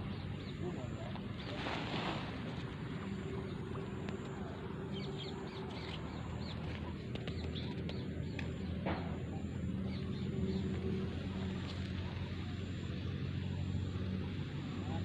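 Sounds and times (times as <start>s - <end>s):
steady low hum: 0.0s - 15.0s
small birds chirping: 3.2s - 11.7s.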